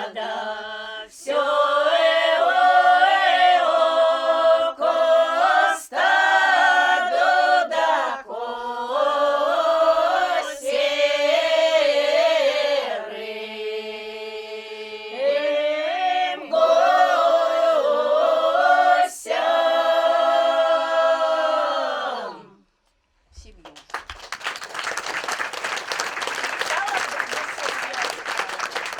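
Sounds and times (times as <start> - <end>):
unaccompanied ensemble singing: 0.0 - 22.6.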